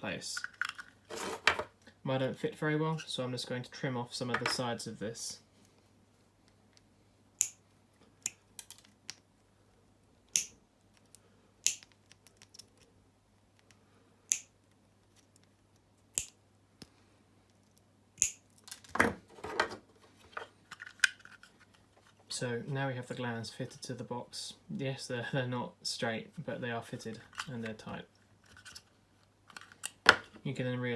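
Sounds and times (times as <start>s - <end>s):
plastic clatter and handling: 0.4s - 1.7s, 18.6s - 22.3s, 28.4s - 28.9s, 29.5s - 30.4s.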